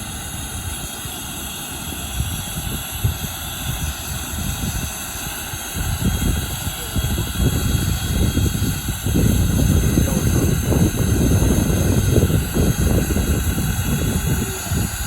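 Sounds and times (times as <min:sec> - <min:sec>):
gusty low rumble: 0:00.0 - 0:15.0
model helicopter turbine whine: 0:00.0 - 0:15.0.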